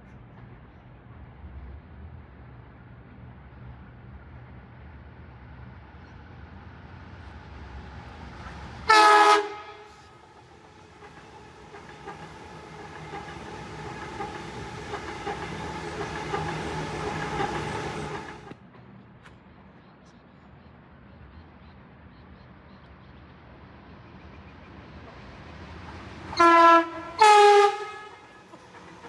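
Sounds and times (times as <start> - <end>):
train approaching with whine: 0.0 - 29.0
train horn blast: 8.9 - 10.3, 11.0 - 18.5, 26.3 - 28.6
train wheel clicks: 10.9 - 18.6, 25.1 - 29.0.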